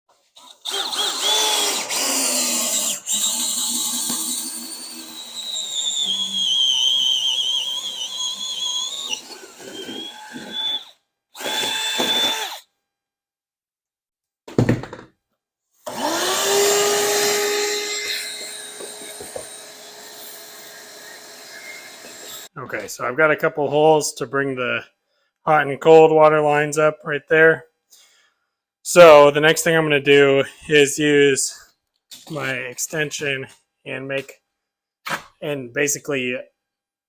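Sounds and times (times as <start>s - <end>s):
power drill whining: 0.4s - 12.6s, 15.8s - 22.5s.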